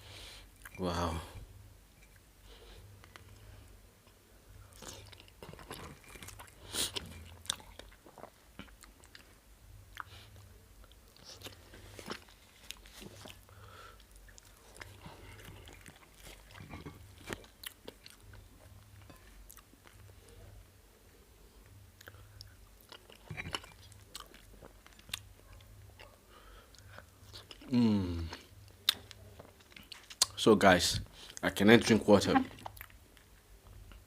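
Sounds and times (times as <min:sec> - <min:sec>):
person chewing: 0:04.6 - 0:20.5, 0:21.6 - 0:30.4, 0:32.5 - 0:34.0.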